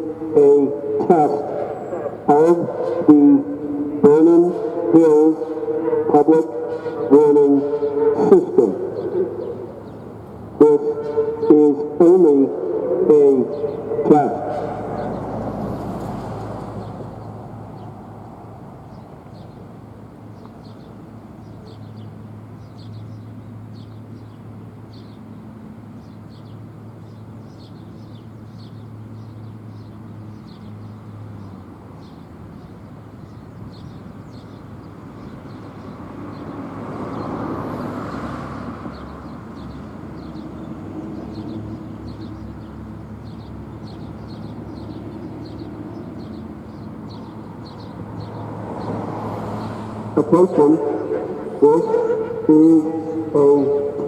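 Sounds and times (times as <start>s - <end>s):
vehicle passing: 0.0s - 21.8s, 34.9s - 54.0s
roadside traffic noise: 0.0s - 54.0s.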